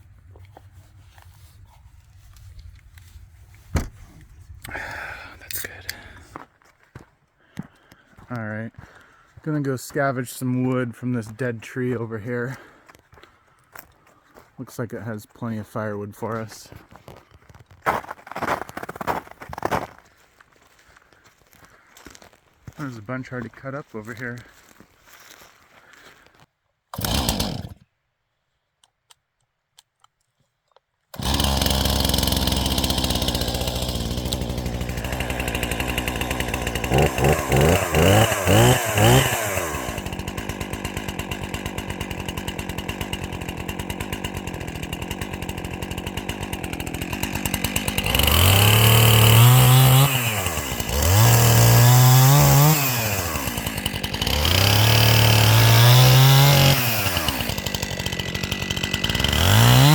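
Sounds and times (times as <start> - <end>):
chainsaw running: 4.6 - 6.2, 26.9 - 27.9, 31.1 - 59.9.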